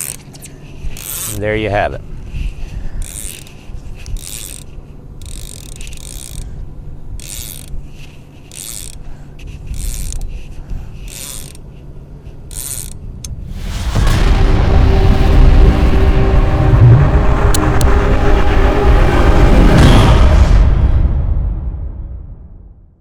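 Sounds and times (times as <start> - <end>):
fishing reel ratcheting: 0.0 - 1.5, 2.9 - 13.2
low steady hum: 0.0 - 22.4.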